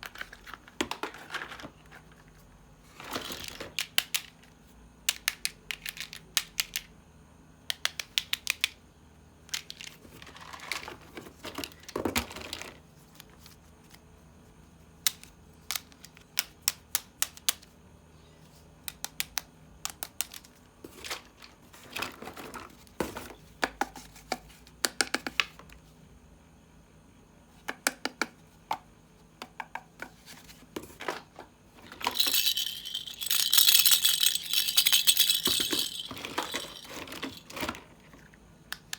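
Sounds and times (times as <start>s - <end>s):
plastic toy parts clicking: 3.7s - 4.5s, 5.1s - 6.9s, 7.7s - 8.8s, 15.0s - 17.7s, 18.8s - 20.6s, 32.1s - 37.6s
continuous rattling: 31.8s - 37.8s
packaging rustling: 32.1s - 37.8s.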